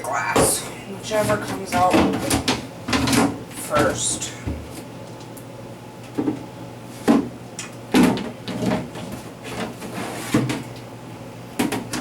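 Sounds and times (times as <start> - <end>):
drawer sliding scrapes: 8.5 - 10.6.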